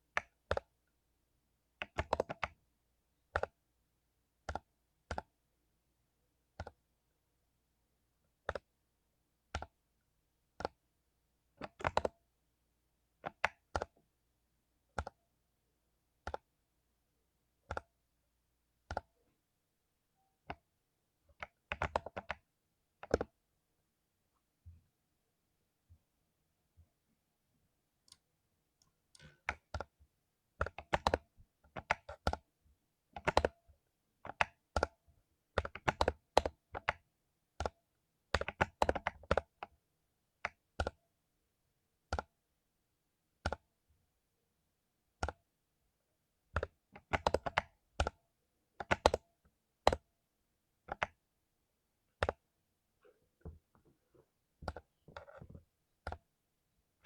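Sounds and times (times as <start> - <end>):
typing on mechanical keyboard: 1.8 - 2.6, 11.6 - 12.2, 13.2 - 14.0, 21.3 - 23.3, 28.8 - 30.0, 30.6 - 32.5, 33.2 - 33.6, 34.2 - 35.0, 35.6 - 37.0, 37.6 - 39.7, 40.4 - 41.0, 46.5 - 48.2, 48.8 - 49.2, 50.9 - 51.2, 54.6 - 56.2.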